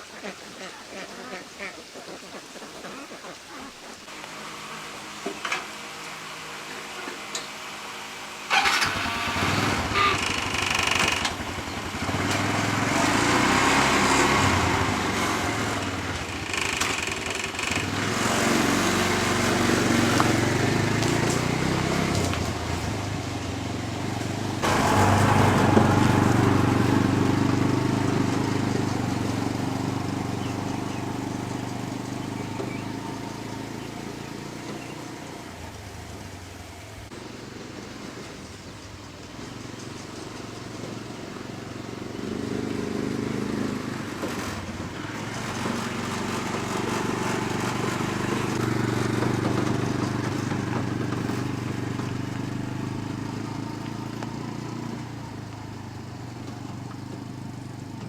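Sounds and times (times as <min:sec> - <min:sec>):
small engine running: 0:04.1 - 0:58.0.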